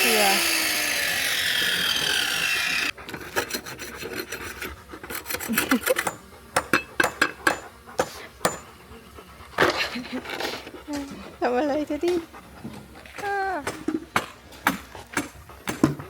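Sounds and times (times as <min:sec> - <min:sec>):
steady machine noise: 0:00.0 - 0:02.9.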